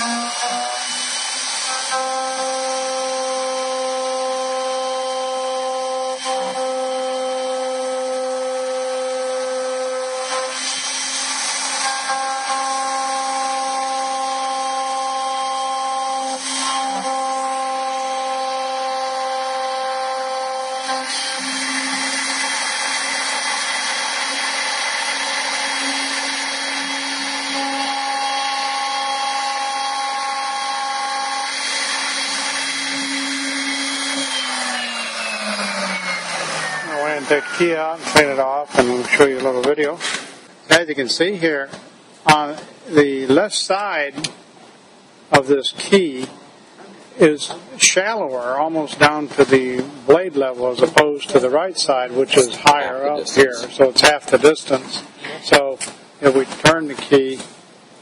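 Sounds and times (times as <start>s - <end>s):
key-cutting machine whine and hiss: 31.3s - 37.7s.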